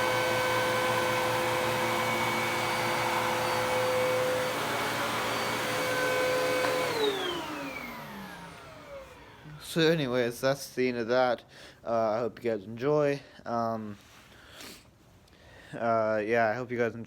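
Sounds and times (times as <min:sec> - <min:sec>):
vacuum cleaner motor whine: 0:00.0 - 0:10.0.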